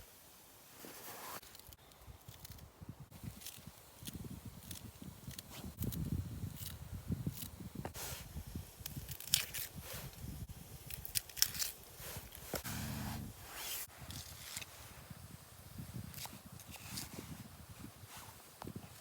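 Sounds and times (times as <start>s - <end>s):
rustling and crunching: 0.6s - 15.0s.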